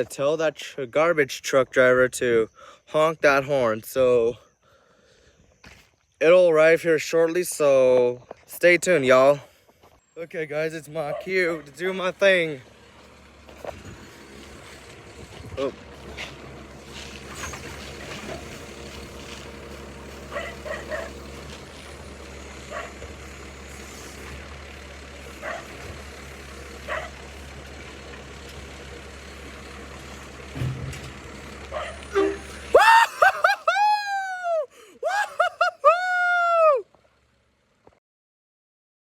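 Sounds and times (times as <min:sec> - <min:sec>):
diesel engine running: 0:08.6 - 0:38.0
truck horn honking: 0:31.9 - 0:32.8.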